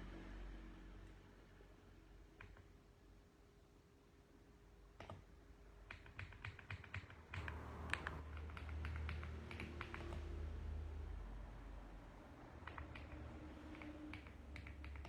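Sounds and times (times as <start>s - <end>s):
mechanical keyboard typing: 5.0s - 10.3s, 12.6s - 15.0s.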